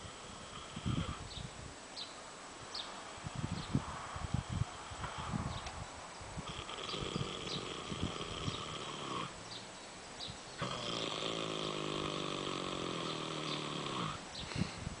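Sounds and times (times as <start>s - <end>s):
animal snoring: 0.0s - 1.2s, 6.4s - 9.4s, 10.6s - 14.6s.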